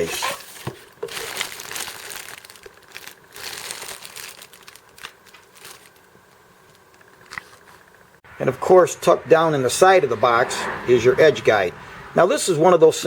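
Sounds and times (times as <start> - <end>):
packaging crinkling and rustling: 0.0 - 7.9.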